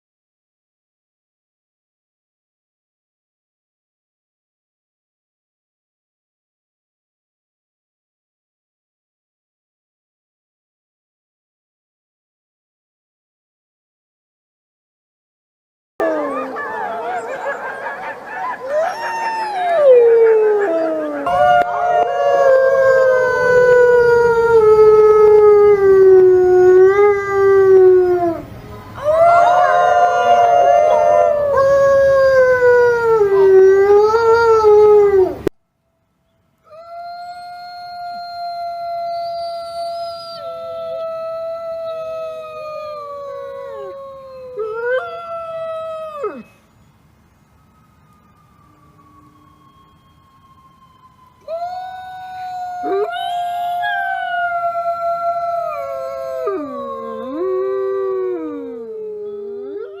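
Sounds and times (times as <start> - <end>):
wolf howling: 16.0 - 35.5, 36.7 - 46.5, 51.4 - 60.0
quiet steady held tone: 43.9 - 52.3.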